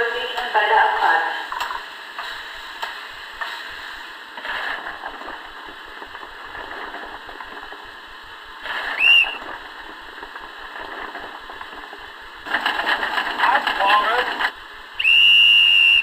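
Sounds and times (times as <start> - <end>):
steady hiss: 0.0 - 16.0
high whistle blast: 8.9 - 9.4, 15.0 - 16.0.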